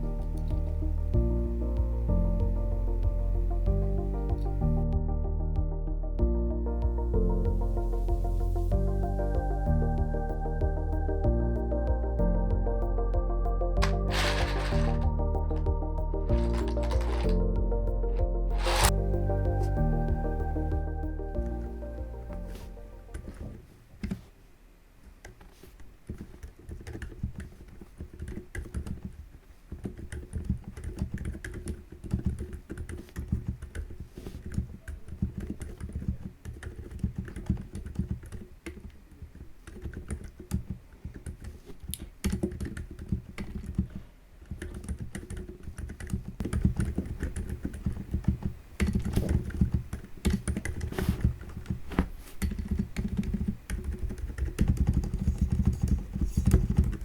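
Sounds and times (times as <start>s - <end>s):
muted mechanical keyboard typing: 13.8s - 15.7s, 16.3s - 17.5s, 26.0s - 51.8s, 52.4s - 57.0s.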